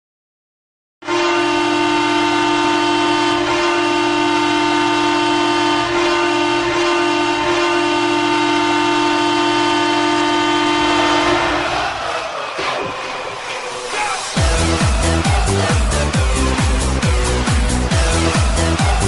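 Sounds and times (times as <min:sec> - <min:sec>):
goal horn long blast: 0:01.0 - 0:12.4, 0:14.3 - 0:19.0.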